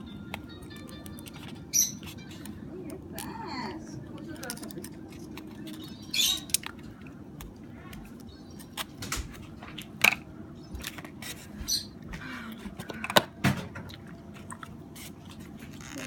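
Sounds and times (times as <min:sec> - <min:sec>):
clicks and taps handling phone parts: 0:04.2 - 0:05.8, 0:12.6 - 0:13.6.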